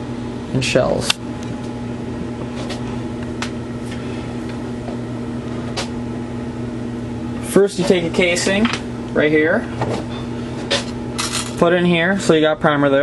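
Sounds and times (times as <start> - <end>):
low machine hum: 0.0 - 13.0.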